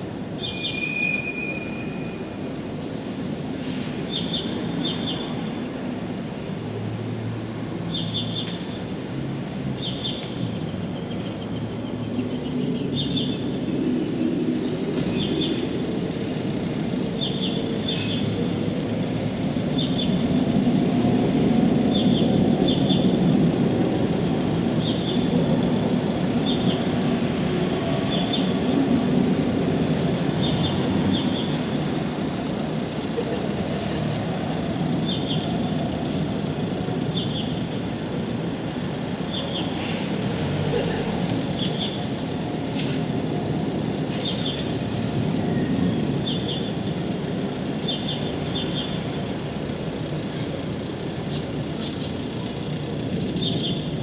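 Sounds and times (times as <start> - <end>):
small birds chirping: 7.2 - 18.4, 19.4 - 20.4, 24.4 - 27.0, 27.8 - 28.7, 29.3 - 31.9, 34.7 - 36.2, 36.8 - 38.0, 38.9 - 40.0, 41.2 - 42.4, 43.9 - 44.8, 45.8 - 49.2, 51.0 - 54.0.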